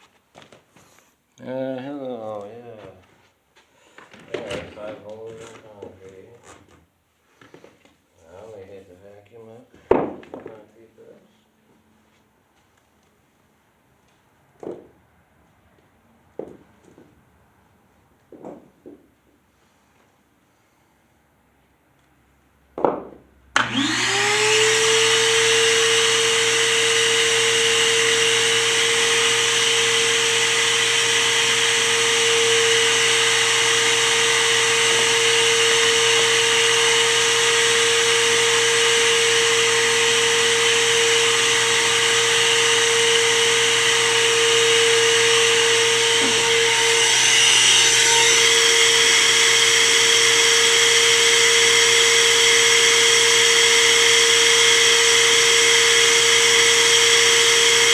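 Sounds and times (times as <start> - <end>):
vacuum cleaner motor running: 23.6 - 57.9.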